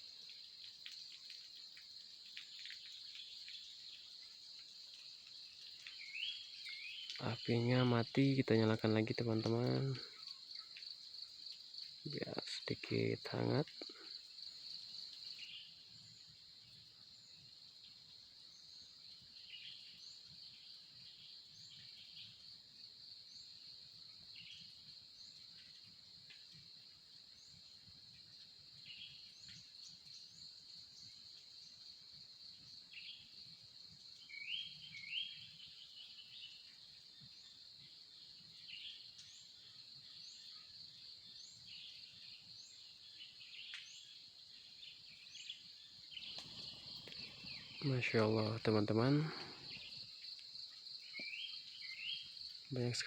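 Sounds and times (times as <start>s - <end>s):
bird calls and chirps: 5.6s - 11.0s, 34.2s - 37.6s, 41.3s - 53.0s.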